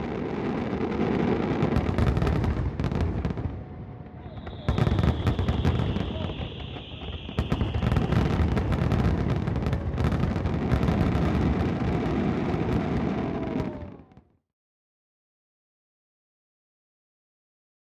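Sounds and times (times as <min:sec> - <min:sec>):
fireworks bangs and crackling: 0:00.0 - 0:14.3
high whistle: 0:04.1 - 0:09.8.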